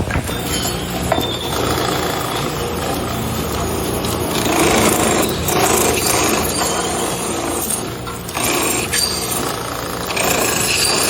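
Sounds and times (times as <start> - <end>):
power tool grinding metal: 0.0 - 11.0
faint high ringing tone: 0.3 - 4.3.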